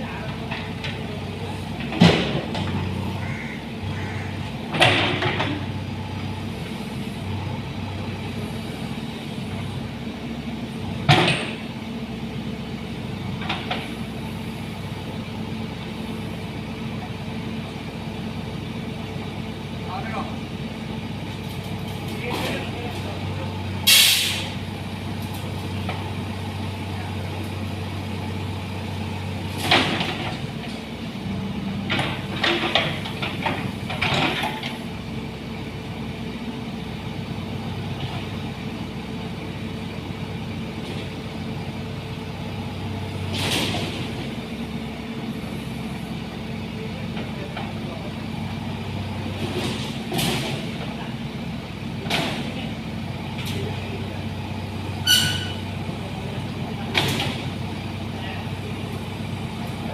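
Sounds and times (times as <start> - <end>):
diesel engine idling: 0.0 - 59.9
short hissing or clattering: 23.9 - 24.5.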